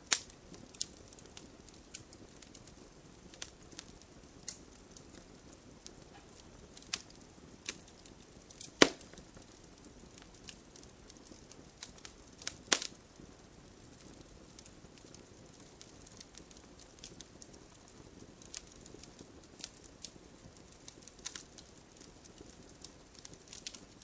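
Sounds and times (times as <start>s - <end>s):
wood fire crackling: 0.0s - 24.0s
rain hissing: 8.6s - 9.4s.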